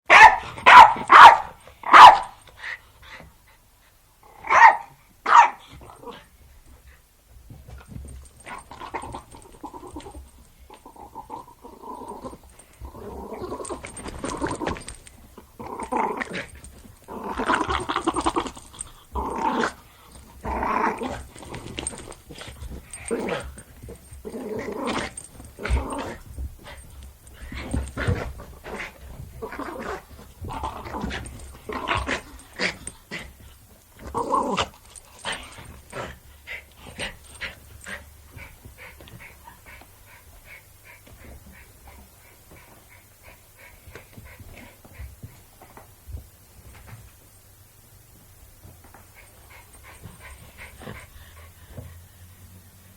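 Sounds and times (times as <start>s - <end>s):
dog barking and yipping: 0.1s - 2.4s, 4.4s - 5.7s
dog growling: 8.4s - 26.8s, 27.4s - 33.4s, 34.0s - 38.5s.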